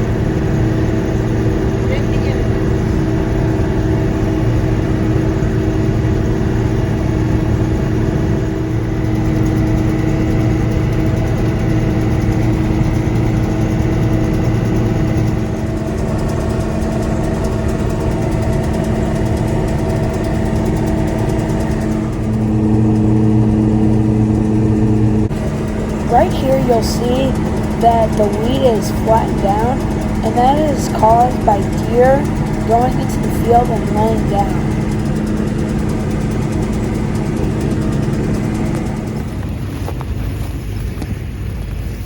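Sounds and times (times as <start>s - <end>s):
combine harvester engine running: 8.6s - 41.5s.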